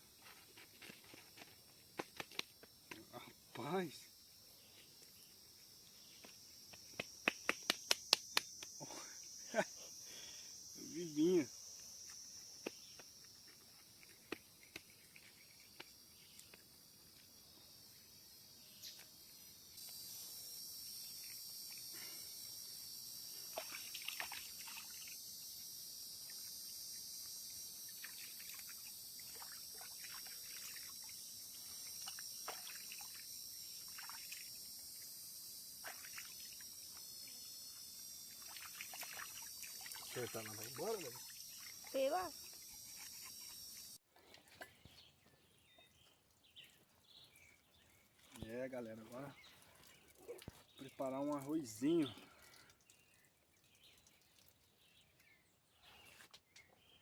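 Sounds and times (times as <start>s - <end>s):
crickets and insects chirring: 0.0s - 44.0s, 44.8s - 57.0s
water splashing and trickling: 23.4s - 25.3s, 27.3s - 35.1s, 35.8s - 37.0s, 38.0s - 43.5s, 45.8s - 55.2s.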